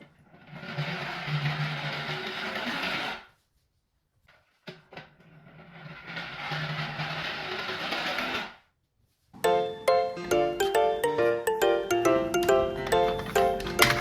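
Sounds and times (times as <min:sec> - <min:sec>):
clicks: 0:12.0 - 0:14.0.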